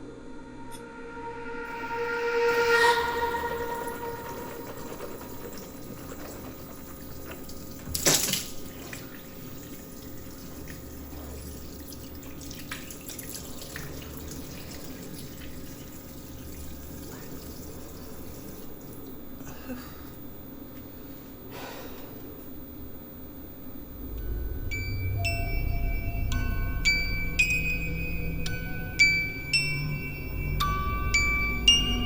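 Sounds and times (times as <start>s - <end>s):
water running from tap into sink: 3.6s - 19.4s.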